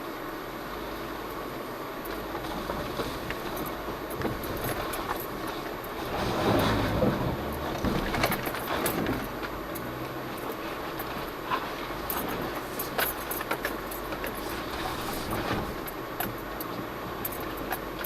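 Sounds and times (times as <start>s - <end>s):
vehicle rumble inside cab: 0.0s - 18.0s
knocks and rattles: 6.0s - 9.5s.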